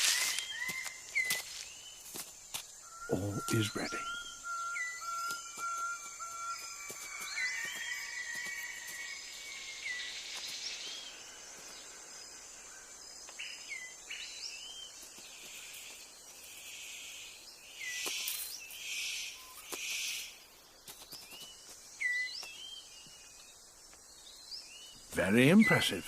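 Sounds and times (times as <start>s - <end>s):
rustling hiss bursts: 0.0s - 0.5s
birds chirping: 0.0s - 26.0s
insect hiss: 0.0s - 26.0s.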